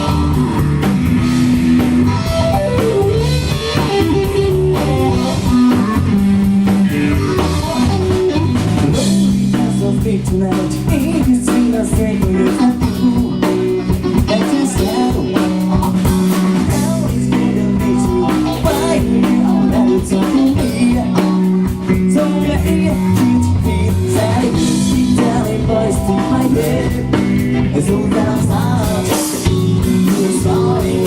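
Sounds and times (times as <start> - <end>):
drum kit: 0.0 - 31.0
guitar: 0.0 - 31.0
live band playing: 0.0 - 31.0
person singing: 6.9 - 31.0.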